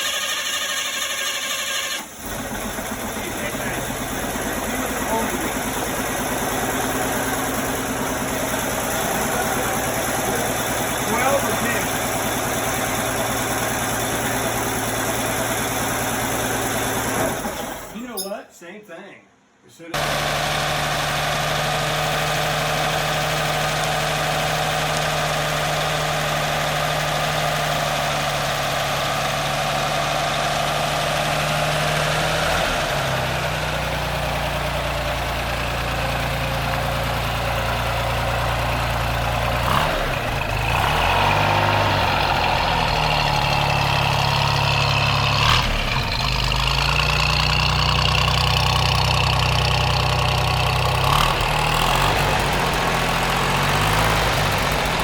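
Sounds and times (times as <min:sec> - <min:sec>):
engine idling: 0:00.0 - 0:18.1, 0:20.0 - 0:55.0.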